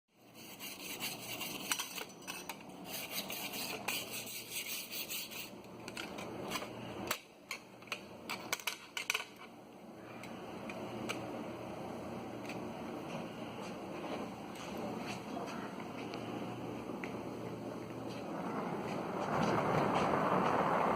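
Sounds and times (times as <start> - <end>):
metallic clicks and scrapes: 0.4 - 9.6
rushing noise: 18.1 - 20.9.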